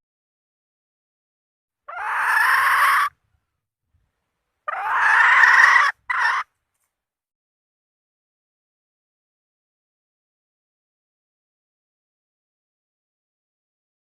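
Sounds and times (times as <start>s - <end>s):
junglefowl hen calling: 1.8s - 3.2s, 4.6s - 6.6s.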